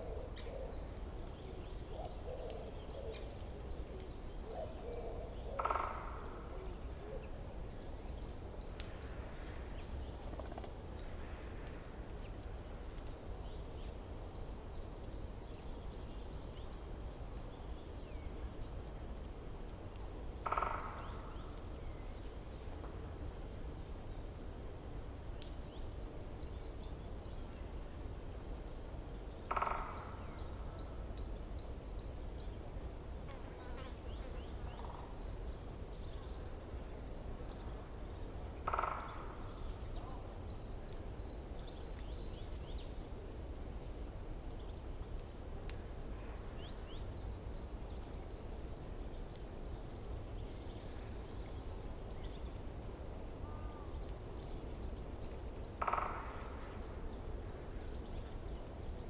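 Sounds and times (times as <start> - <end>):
loud lower bird calls: 53.4 - 56.8
songbird rapid high chirps: 53.6 - 56.6.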